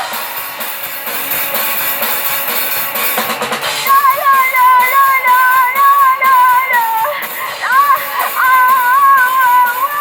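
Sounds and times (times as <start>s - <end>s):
drum kit kick and snare: 0.0s - 10.0s
live band playing: 0.0s - 10.0s.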